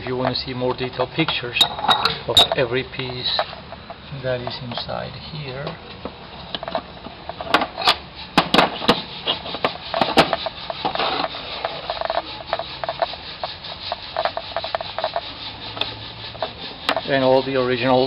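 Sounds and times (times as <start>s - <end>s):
scraping and rubbing: 0.0s - 18.0s
metal tools knocking on wood: 5.6s - 17.2s.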